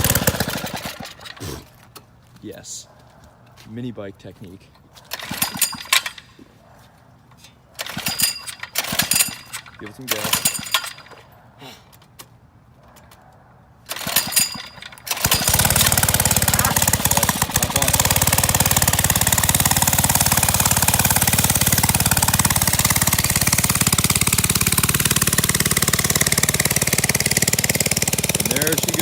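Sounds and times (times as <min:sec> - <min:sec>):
small engine running: 0:00.0 - 0:01.6, 0:07.8 - 0:11.3, 0:13.9 - 0:29.0
engine starter rattling: 0:00.0 - 0:01.9, 0:05.0 - 0:06.5, 0:07.3 - 0:11.4, 0:13.9 - 0:29.0.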